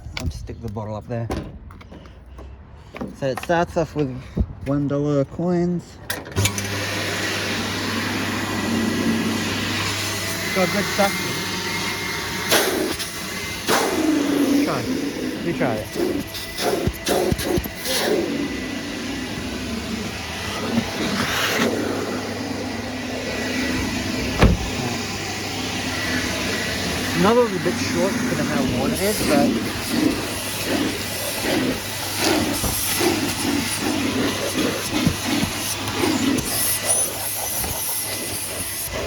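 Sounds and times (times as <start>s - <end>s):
thump: 1.3s - 1.6s, 24.2s - 24.9s
vacuum cleaner motor drone: 6.4s - 39.0s
sharp knock: 24.4s - 24.8s.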